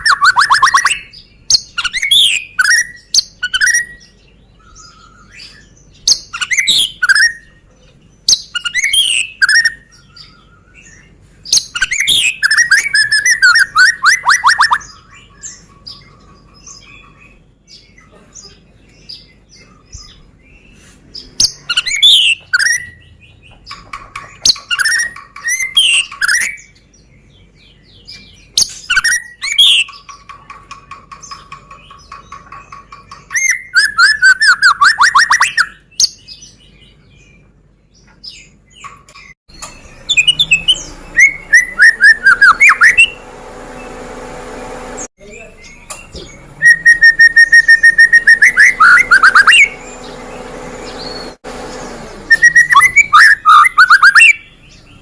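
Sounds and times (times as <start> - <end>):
bird singing whistled phrases: 0.0 - 4.0, 4.6 - 7.5, 8.3 - 10.8, 11.6 - 15.4, 28.6 - 29.9, 33.3 - 36.2, 40.0 - 43.2, 45.4 - 49.8, 52.3 - 54.5
fast repeated bird notes: 0.0 - 7.6, 8.2 - 17.9, 19.1 - 27.2, 27.8 - 36.2, 39.2 - 55.0.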